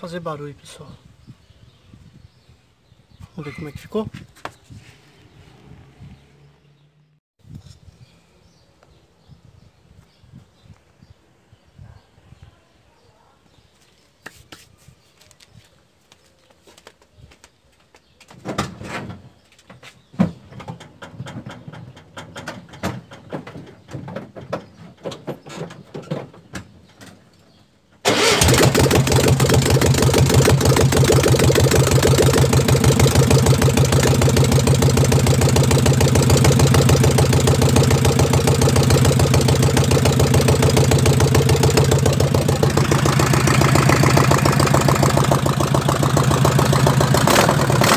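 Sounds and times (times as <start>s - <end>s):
loud air-cooled engine running: 28.1s - 47.9s.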